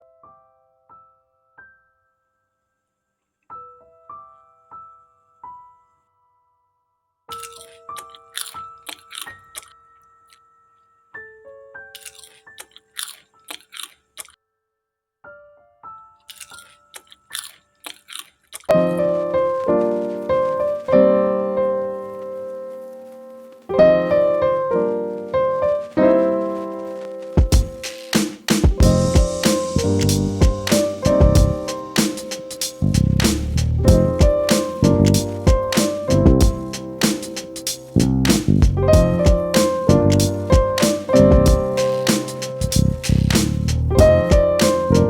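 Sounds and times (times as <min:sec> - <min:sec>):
potato chips crunching: 0:07.3 - 0:10.4, 0:12.0 - 0:14.4, 0:16.3 - 0:20.2
soft slow piano notes: 0:18.7 - 0:28.1, 0:28.7 - 0:38.0, 0:38.7 - 0:43.1, 0:43.9 - 0:45.0.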